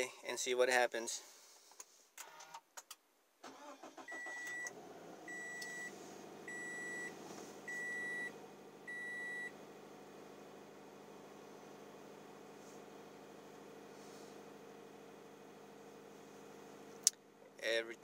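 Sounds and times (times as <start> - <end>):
car engine idling: 3.5 - 18.0
car warning chime beeping: 3.9 - 5.9, 6.5 - 9.6.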